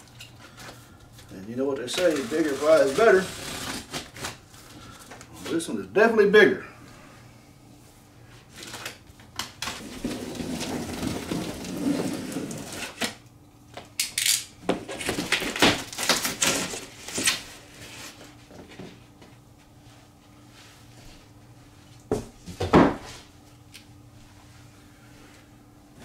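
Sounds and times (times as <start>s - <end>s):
packaging rustling: 0.0s - 5.3s, 8.5s - 11.8s, 14.9s - 17.4s.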